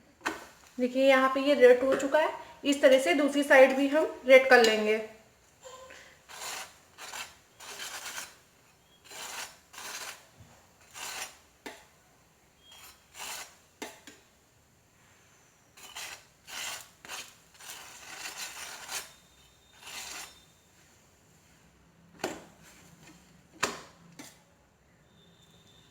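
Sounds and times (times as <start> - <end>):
flatbread rubbed on hot griddle: 6.2 - 11.6, 12.6 - 13.7, 15.8 - 20.5.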